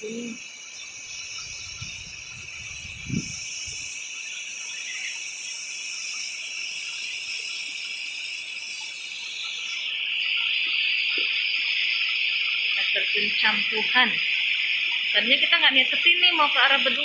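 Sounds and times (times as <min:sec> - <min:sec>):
insects buzzing: 0:00.0 - 0:17.0
low rumble on microphone: 0:01.6 - 0:03.8.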